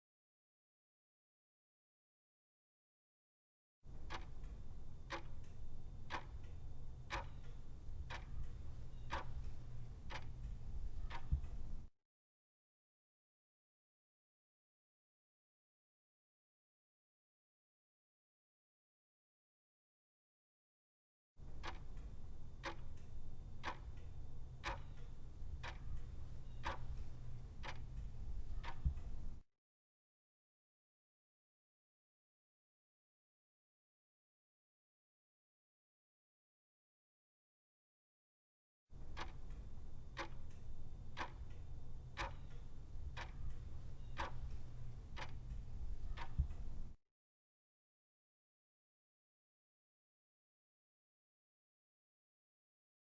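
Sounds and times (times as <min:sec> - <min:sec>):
clock ticking: 0:03.9 - 0:11.9, 0:21.4 - 0:29.4, 0:39.0 - 0:47.0.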